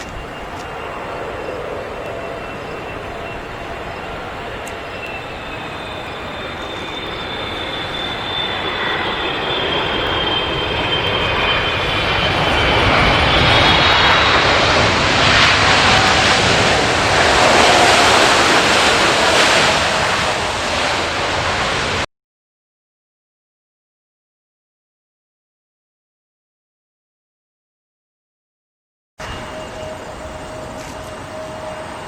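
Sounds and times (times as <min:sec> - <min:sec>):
high turbine whine: 0:00.0 - 0:22.1, 0:29.2 - 0:32.0
jet engines roaring past: 0:00.0 - 0:22.1, 0:29.2 - 0:32.0.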